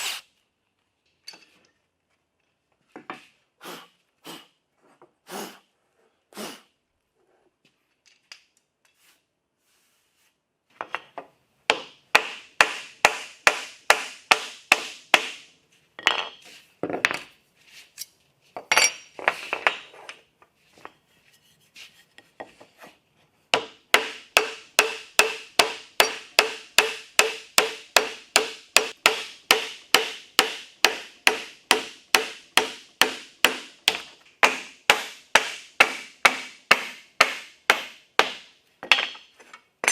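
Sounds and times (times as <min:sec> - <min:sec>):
hammer striking hand tool: 0:11.7 - 0:15.4, 0:23.6 - 0:39.9.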